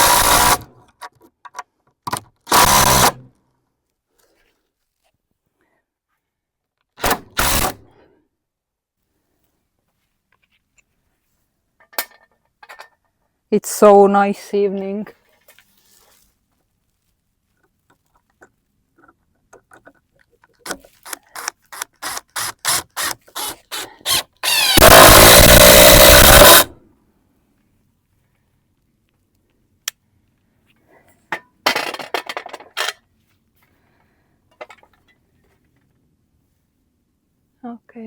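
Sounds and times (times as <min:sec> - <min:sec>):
power tool running: 0:00.0 - 0:00.6, 0:02.5 - 0:03.2, 0:22.7 - 0:26.7.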